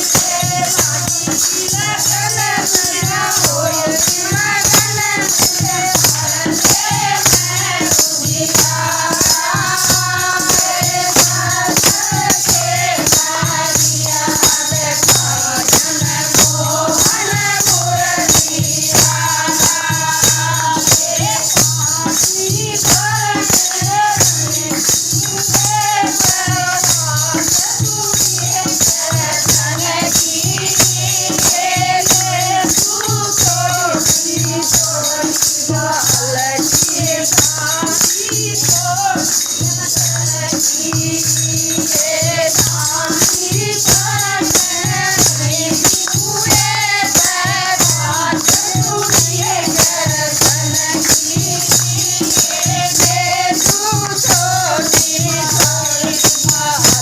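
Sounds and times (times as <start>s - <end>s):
group singing devotional song: 0.0s - 57.0s
rattling shaker percussion: 0.0s - 57.0s.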